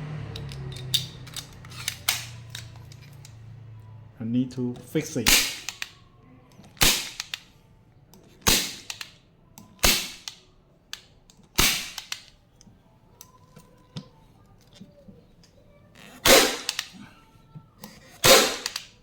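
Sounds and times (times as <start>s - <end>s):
staple gun firing: 5.3s - 5.9s, 6.8s - 7.4s, 8.4s - 10.4s, 11.6s - 12.3s, 16.2s - 17.0s, 18.2s - 19.0s.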